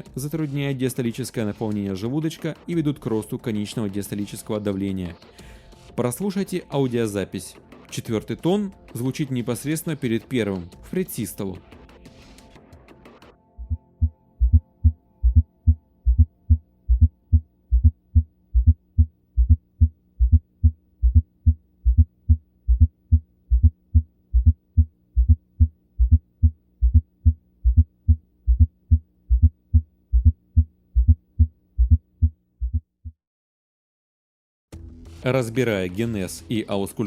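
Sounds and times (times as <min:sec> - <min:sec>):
faint steady hum: 0:13.6 - 0:32.8
heartbeat thuds: 0:13.6 - 0:33.2.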